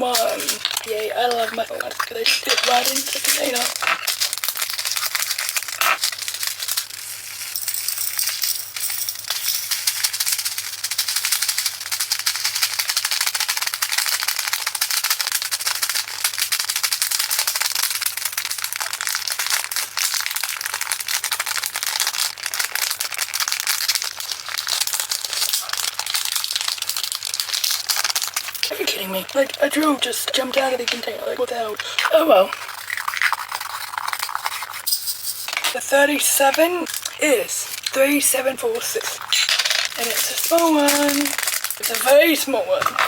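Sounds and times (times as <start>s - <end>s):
tiny plastic beads clattering: 0.0s - 43.0s.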